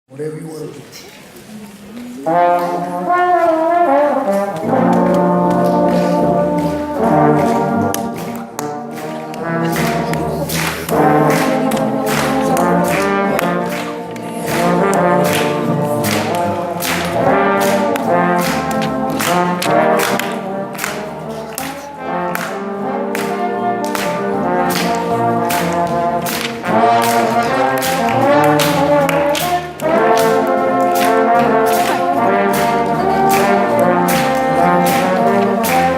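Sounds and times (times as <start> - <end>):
brass ensemble playing: 1.7 - 35.9
percussion hits: 2.2 - 35.9.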